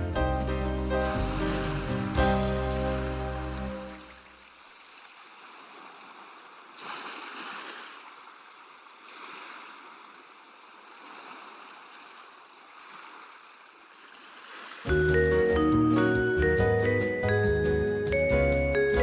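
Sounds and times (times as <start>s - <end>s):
washing machine drum sloshing: 0.9s - 4.1s.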